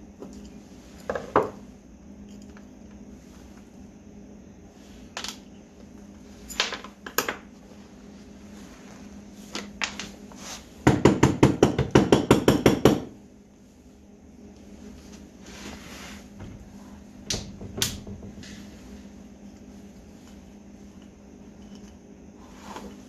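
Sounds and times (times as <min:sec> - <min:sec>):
low steady hum: 0:00.0 - 0:23.0
sharp knocks on a bench: 0:10.9 - 0:13.1.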